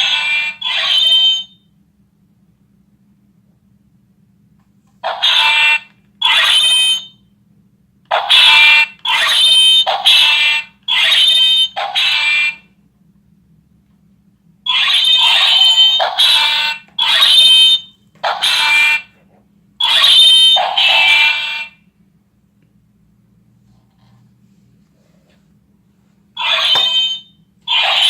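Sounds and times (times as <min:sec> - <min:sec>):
toy sword electronic buzzing: 0:14.7 - 0:19.0, 0:19.8 - 0:21.8, 0:26.4 - 0:28.0.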